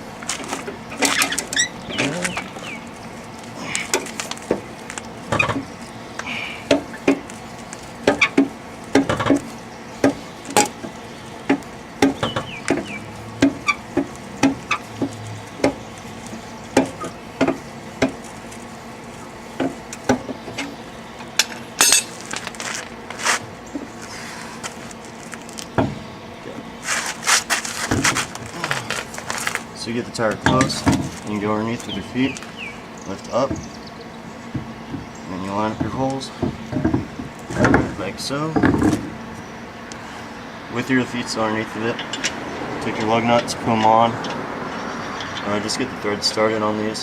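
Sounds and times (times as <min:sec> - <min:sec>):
car jack metallic clinks: 0:19.6 - 0:22.2.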